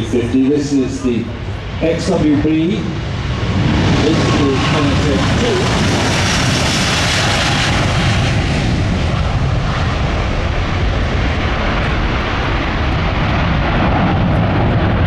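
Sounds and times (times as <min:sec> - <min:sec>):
jet airliner flying past: 0:00.0 - 0:15.0.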